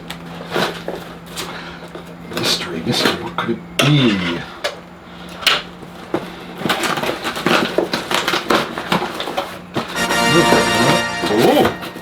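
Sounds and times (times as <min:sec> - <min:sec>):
packing crinkling and rustling: 0:05.9 - 0:09.6.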